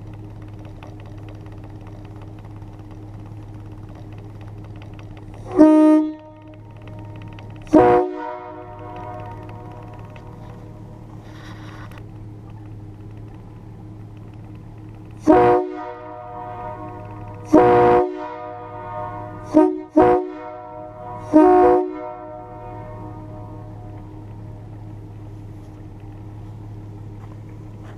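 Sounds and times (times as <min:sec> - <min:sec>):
steady low hum: 0:00.0 - 0:27.9
air horn chord blasts: 0:05.4 - 0:11.2, 0:15.2 - 0:24.7.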